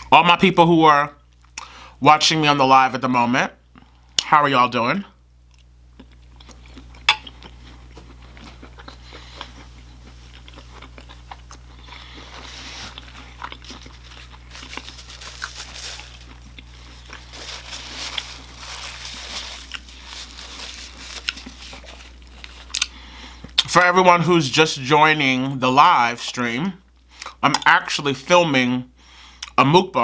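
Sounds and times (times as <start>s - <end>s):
low steady hum: 0.0s - 30.0s
person chewing crunchy food: 5.4s - 23.7s, 27.1s - 27.7s.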